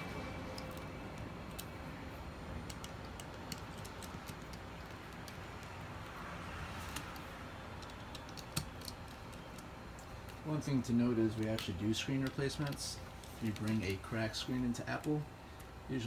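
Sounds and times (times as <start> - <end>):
low room hum: 0.0 - 16.0
light clicks and taps: 11.3 - 14.0.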